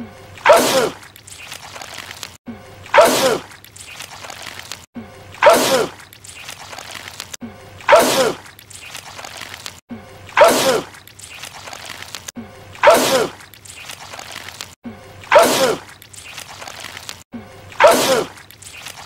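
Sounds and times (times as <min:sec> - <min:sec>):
man sneezing: 0:10.4 - 0:10.9, 0:17.8 - 0:18.3.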